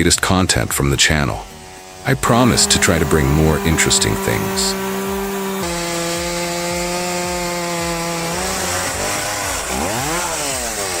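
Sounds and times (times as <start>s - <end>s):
chainsaw engine at high revs: 0.7s - 11.0s.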